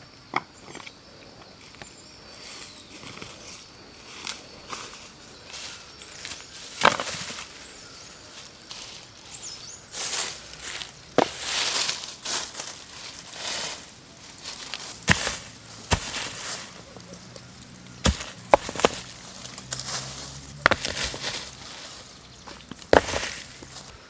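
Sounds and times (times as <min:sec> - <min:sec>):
faint bird chirp: 0:00.0 - 0:11.2
dry leaves and twigs rustling: 0:00.6 - 0:24.0.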